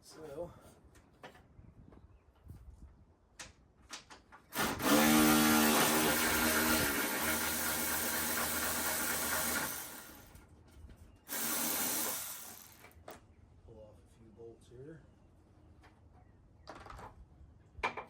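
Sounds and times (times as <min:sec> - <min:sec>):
power drill running: 0:04.5 - 0:10.4, 0:11.3 - 0:13.0.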